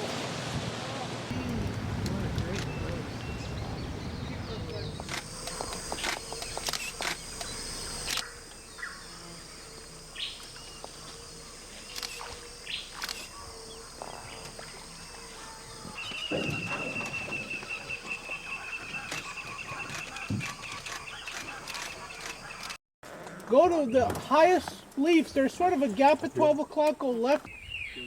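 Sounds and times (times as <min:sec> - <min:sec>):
scattered clicks: 0:05.0 - 0:08.3, 0:19.9 - 0:22.8.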